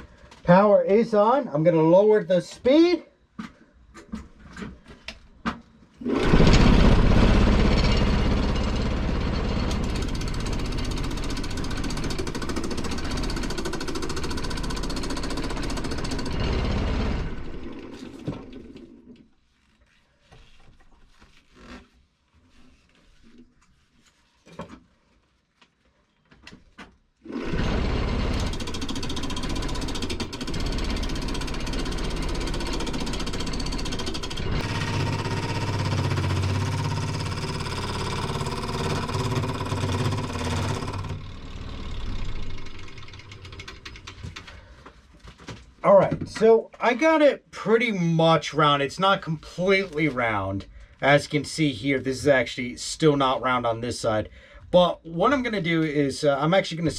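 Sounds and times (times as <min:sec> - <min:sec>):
scraper cutting log on wood lathe: 0:06.0 - 0:18.3, 0:27.3 - 0:43.7.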